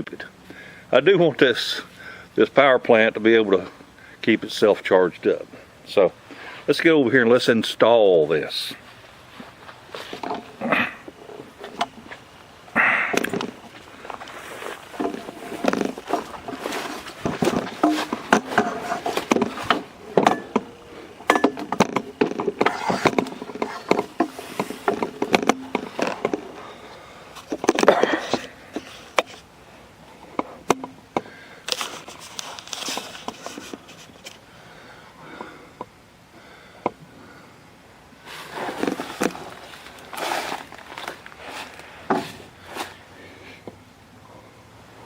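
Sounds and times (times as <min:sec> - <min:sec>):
tools and parts clattering: 0:14.9 - 0:26.8, 0:27.4 - 0:29.4, 0:30.7 - 0:31.0.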